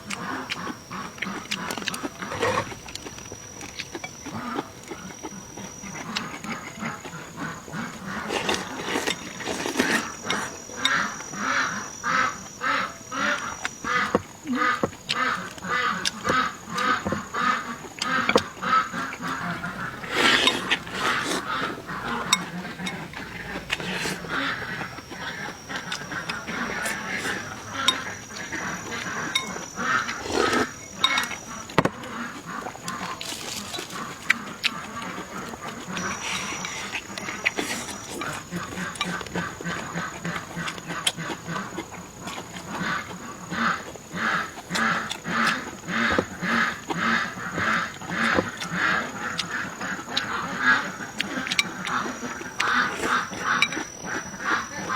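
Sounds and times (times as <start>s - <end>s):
person chewing food: 0.0s - 54.9s
thin high tone: 1.8s - 14.7s, 18.2s - 40.0s
utensils clinking against dish: 18.0s - 32.0s, 32.7s - 40.8s, 51.3s - 54.9s.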